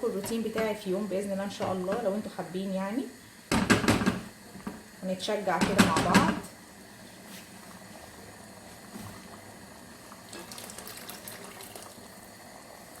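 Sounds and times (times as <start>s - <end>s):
pot bubbling faintly: 7.6s - 13.0s.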